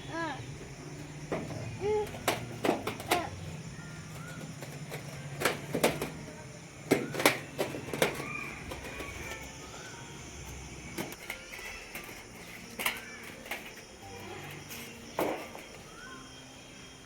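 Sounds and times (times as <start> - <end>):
bird chirps: 15.6 - 16.8.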